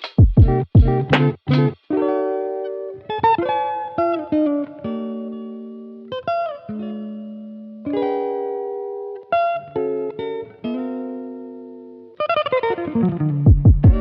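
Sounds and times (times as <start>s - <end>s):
picked guitar notes: 0.0s - 14.0s.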